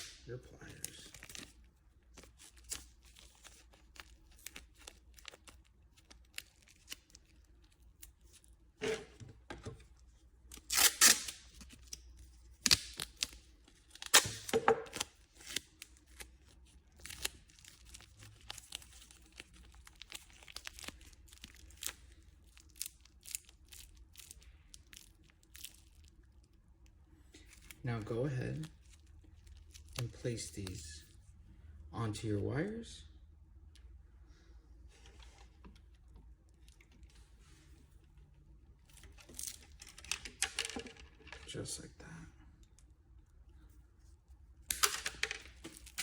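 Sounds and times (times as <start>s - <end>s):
adhesive tape ripping: 0.0s - 0.3s, 10.5s - 12.0s, 12.6s - 16.3s
handling clicks and crinkles: 0.0s - 27.8s, 38.8s - 41.6s, 44.6s - 46.0s.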